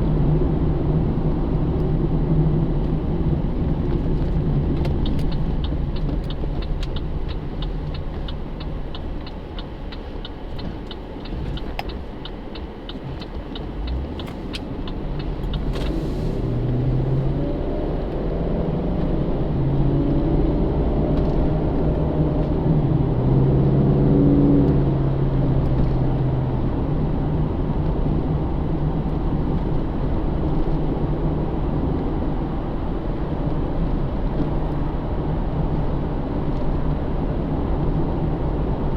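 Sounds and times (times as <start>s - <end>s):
car engine and road rumble: 0.0s - 38.9s
fast light ticking: 4.9s - 15.8s.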